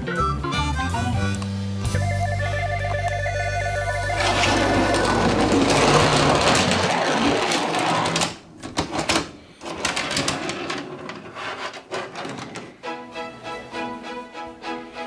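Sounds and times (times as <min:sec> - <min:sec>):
plastic toys rattling and clicking: 0:04.2 - 0:12.8.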